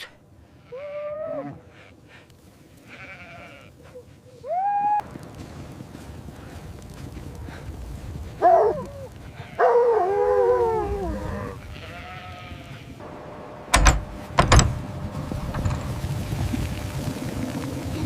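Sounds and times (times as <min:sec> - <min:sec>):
livestock bleating: 0:00.6 - 0:01.9, 0:02.8 - 0:03.8, 0:11.2 - 0:13.0.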